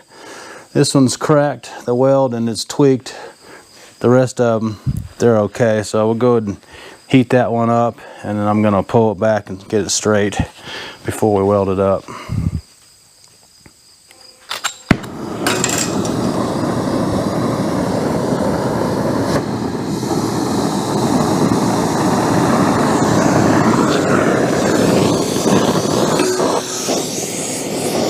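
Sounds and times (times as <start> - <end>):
gas torch lighting pop: 14.5 - 17.4, 18.4 - 28.0
torch flame roaring: 15.0 - 28.0.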